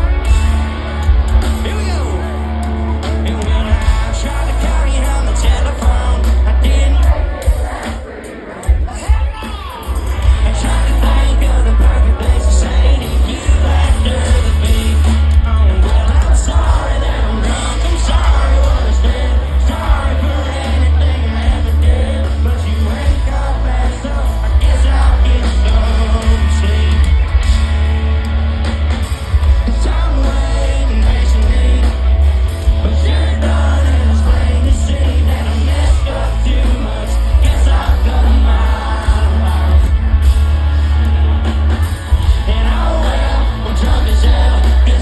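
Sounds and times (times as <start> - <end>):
heavy bass: 0.0 - 45.0
live rock band with singer: 0.0 - 45.0.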